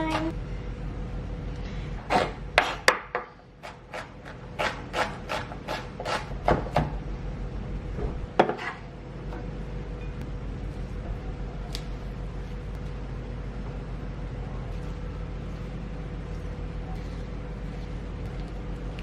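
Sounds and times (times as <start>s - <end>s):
knife chopping on cutting board: 2.1s - 3.0s, 3.6s - 6.9s.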